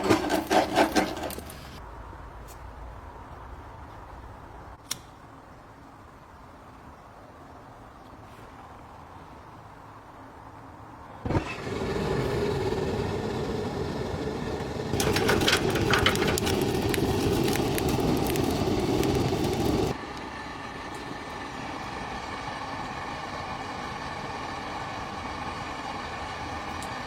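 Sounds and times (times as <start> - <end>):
gas burner lighting whoosh: 11.2 - 20.0
burner roaring: 11.3 - 20.0
crackling: 14.4 - 20.0.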